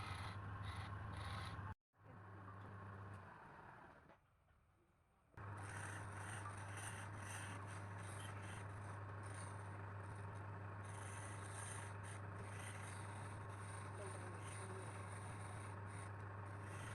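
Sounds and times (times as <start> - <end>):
lathe motor hum: 0.0 - 1.8, 5.4 - 16.9
turning tool scraping wood: 5.4 - 16.9.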